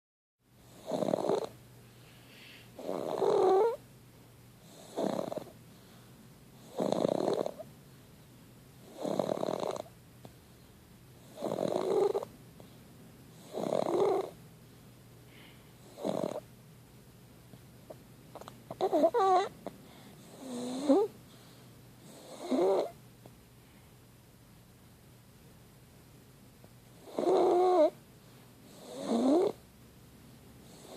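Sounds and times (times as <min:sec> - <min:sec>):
person snoring: 0:00.7 - 0:01.5, 0:02.4 - 0:03.8, 0:04.7 - 0:05.5, 0:06.6 - 0:07.6, 0:11.3 - 0:12.3, 0:15.9 - 0:16.4, 0:20.3 - 0:21.1, 0:28.7 - 0:29.6.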